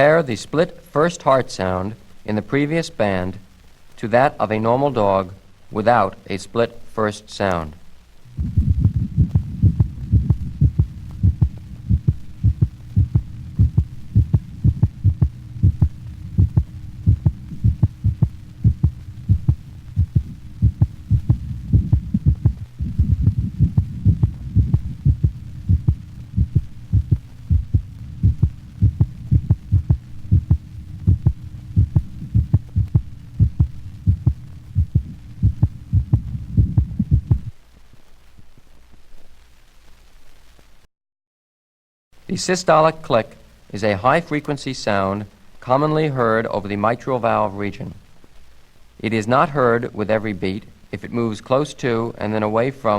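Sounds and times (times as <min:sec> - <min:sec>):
faint steady hum: 0:00.0 - 0:40.9, 0:42.2 - 0:52.9
dog heartbeat: 0:08.4 - 0:37.5.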